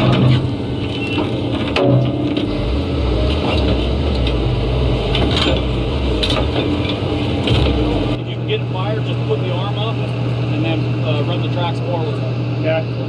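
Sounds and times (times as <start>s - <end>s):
metallic clanks and knocks: 0.0s - 4.4s, 5.0s - 8.2s
diesel machinery rumbling: 0.0s - 13.0s.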